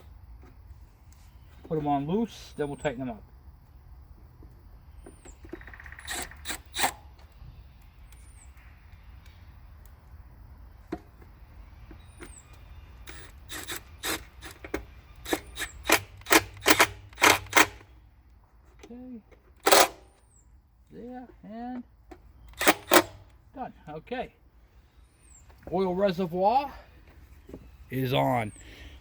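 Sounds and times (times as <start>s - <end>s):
screws clicking as tightened: 6.0s - 7.0s, 13.1s - 17.8s, 19.7s - 20.0s, 22.5s - 23.2s
metal parts clicking and knocking: 13.1s - 17.9s, 19.6s - 20.0s, 22.5s - 23.3s.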